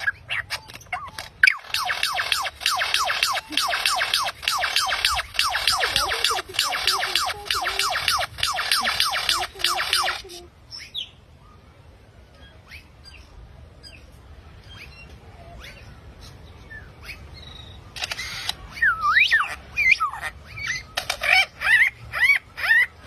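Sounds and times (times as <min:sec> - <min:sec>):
harsh bird call: 0:00.0 - 0:11.1
bird chirps: 0:00.0 - 0:11.2.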